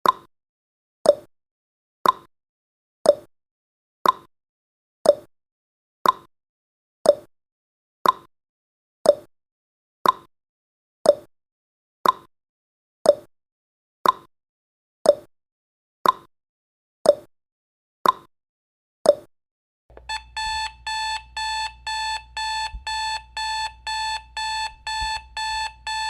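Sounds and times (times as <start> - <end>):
alarm clock beeping: 19.9 - 26.0
timer ticking: 19.9 - 26.0.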